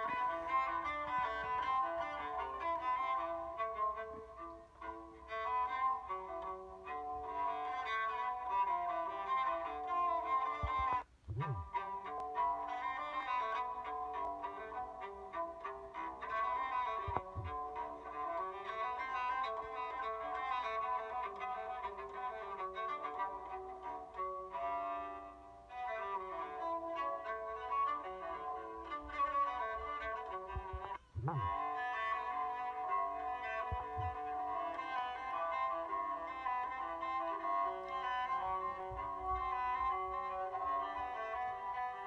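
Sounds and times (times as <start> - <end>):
low thumps: 10.6 - 11.8, 17.1 - 17.8, 30.5 - 31.6.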